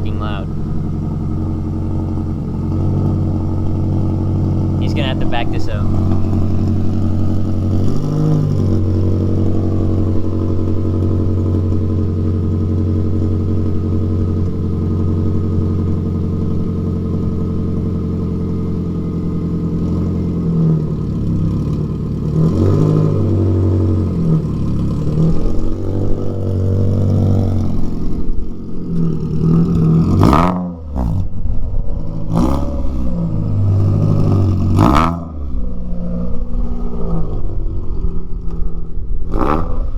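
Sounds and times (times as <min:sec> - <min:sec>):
exhaust cracks: 0:00.0 - 0:39.9
loud car engine revving: 0:00.0 - 0:39.9.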